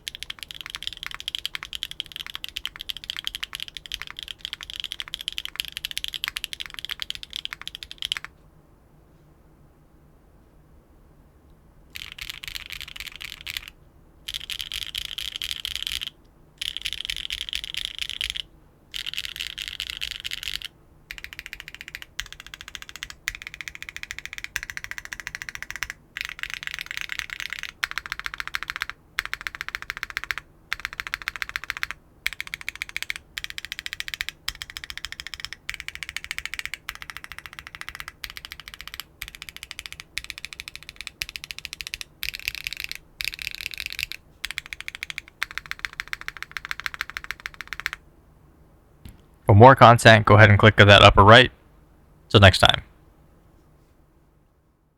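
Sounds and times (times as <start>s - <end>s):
fast mechanical keyboard typing: 0.0s - 8.3s, 11.9s - 13.7s, 14.3s - 48.0s.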